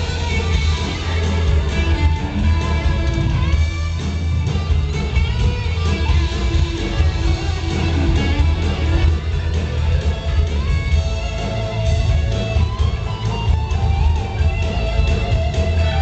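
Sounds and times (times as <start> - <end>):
heavy bass line: 0.0 - 16.0
rock band playing: 0.0 - 16.0
strummed guitar: 0.0 - 16.0.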